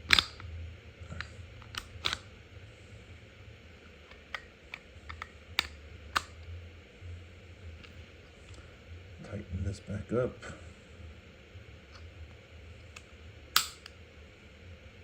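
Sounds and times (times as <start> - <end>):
pistol slide metal clicks: 1.7 - 2.2, 13.6 - 14.0.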